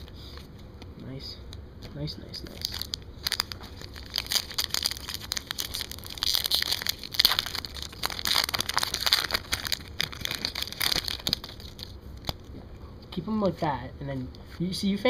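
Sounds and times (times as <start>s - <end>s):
plastic wrapper crinkling and tearing: 2.3s - 12.6s.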